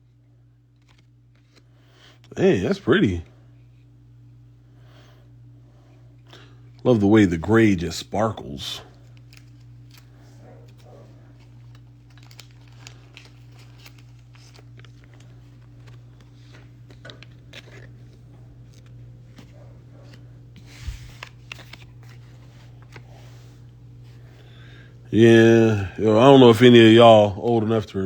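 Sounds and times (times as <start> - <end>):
foil pack and cards crinkling: 0.7 - 3.2, 8.9 - 27.8.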